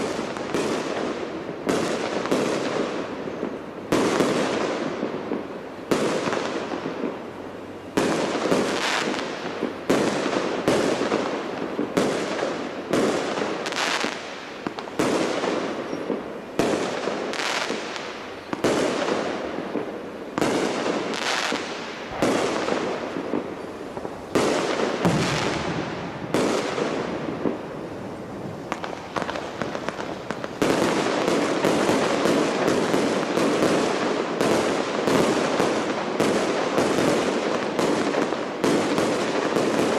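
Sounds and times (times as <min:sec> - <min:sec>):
crackling fireworks barrage: 0:00.0 - 0:39.9
fireworks bangs with rumble: 0:00.0 - 0:39.9.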